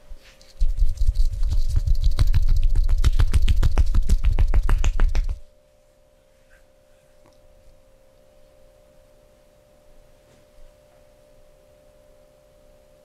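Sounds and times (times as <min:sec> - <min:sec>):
hand-tapping massage slaps: 0:00.9 - 0:05.4.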